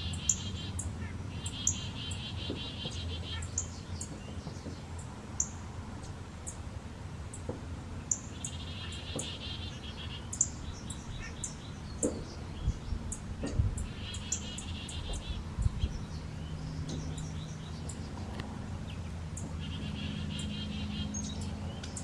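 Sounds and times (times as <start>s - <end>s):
songbirds chirping: 0.0s - 22.0s.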